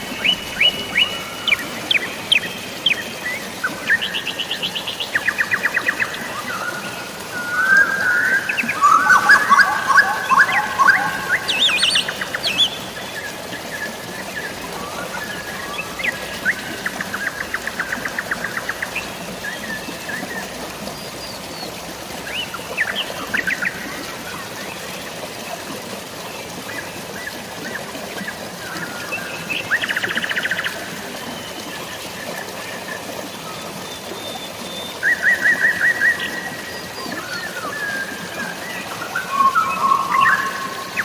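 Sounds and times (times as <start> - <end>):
running water: 0.0 - 41.0
small birds chirping and trilling: 34.0 - 41.0.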